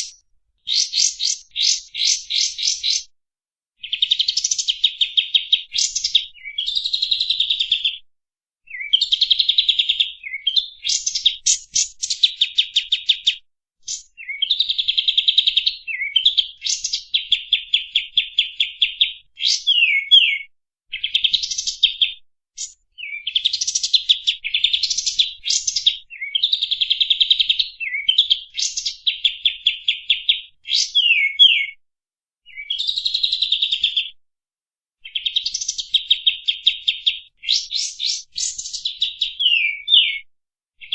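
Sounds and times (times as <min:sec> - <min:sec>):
bird singing fast trills: 0:00.0 - 0:03.1, 0:08.7 - 0:13.3, 0:13.9 - 0:22.0, 0:22.6 - 0:31.8, 0:35.0 - 0:40.2.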